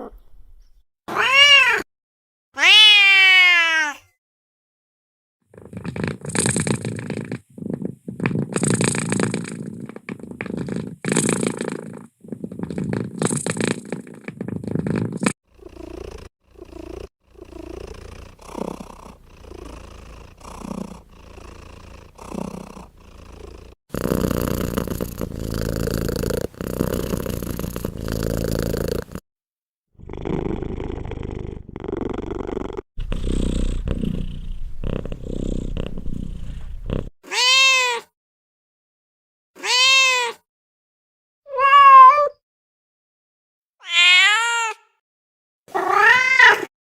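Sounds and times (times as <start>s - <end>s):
cats purring: 5.5s - 29.2s, 30.0s - 37.2s.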